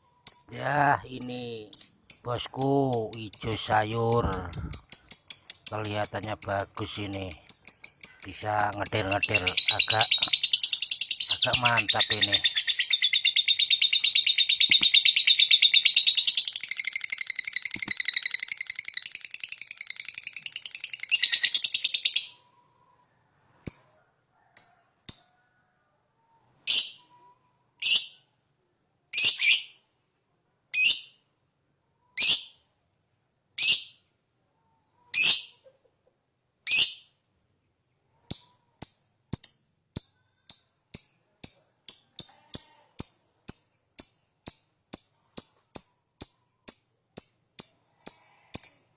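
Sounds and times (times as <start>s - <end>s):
bird chattering: 0.3s - 22.3s.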